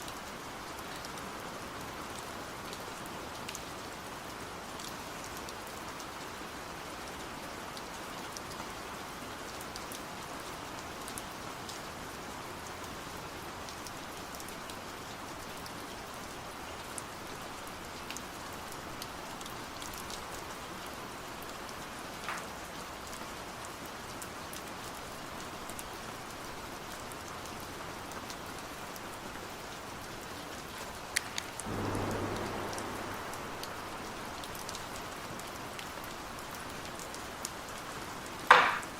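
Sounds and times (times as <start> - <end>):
steady rain falling: 0.0 - 38.9
low hum: 31.7 - 35.5.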